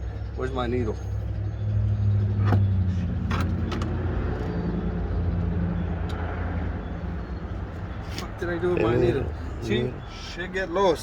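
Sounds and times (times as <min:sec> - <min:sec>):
engine humming: 0:00.0 - 0:11.0.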